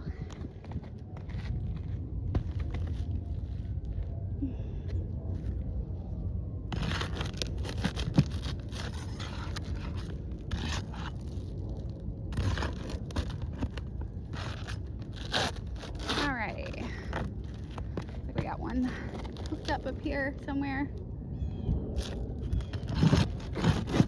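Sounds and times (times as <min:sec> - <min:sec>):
shingles scraping and tearing: 0:06.7 - 0:20.1, 0:22.0 - 0:24.0.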